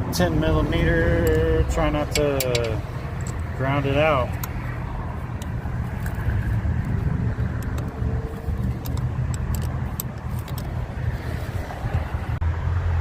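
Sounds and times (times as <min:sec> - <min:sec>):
steady low rumble: 0:00.0 - 0:12.6
wrench clicking on metal: 0:01.1 - 0:04.7, 0:05.4 - 0:10.8.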